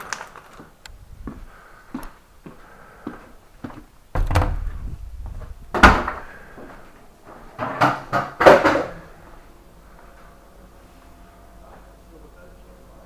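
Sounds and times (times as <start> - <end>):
knocks and thuds on door: 4.2 - 4.9, 5.7 - 6.2.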